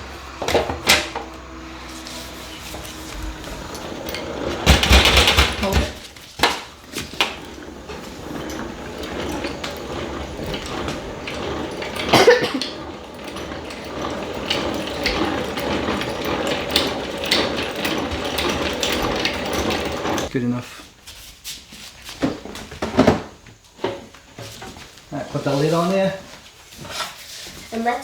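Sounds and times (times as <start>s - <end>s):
honey extractor gears whirring: 0.0s - 20.3s.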